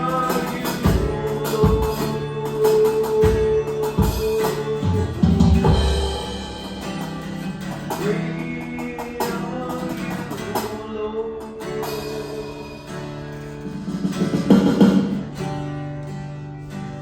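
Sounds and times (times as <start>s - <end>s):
live worship music: 0.0s - 15.4s
acoustic guitar strumming: 0.0s - 17.0s.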